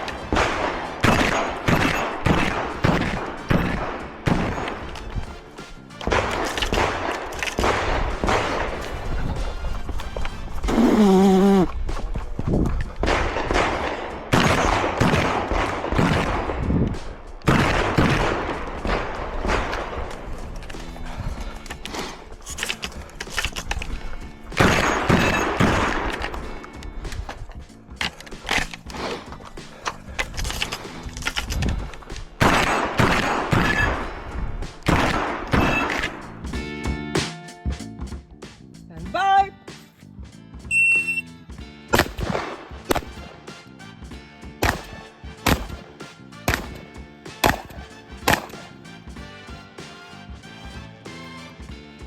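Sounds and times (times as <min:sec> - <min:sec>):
shotgun shots echoing: 0:00.0 - 0:05.0, 0:06.0 - 0:09.1, 0:13.0 - 0:20.3, 0:24.5 - 0:26.6, 0:32.4 - 0:36.2, 0:41.9 - 0:43.3, 0:44.6 - 0:48.7.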